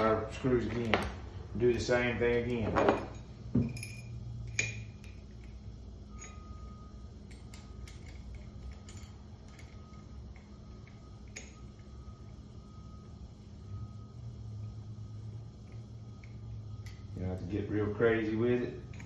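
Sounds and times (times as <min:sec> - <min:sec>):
low hum: 0:00.0 - 0:19.0
tools tapping on metal: 0:00.6 - 0:12.0, 0:18.8 - 0:19.0.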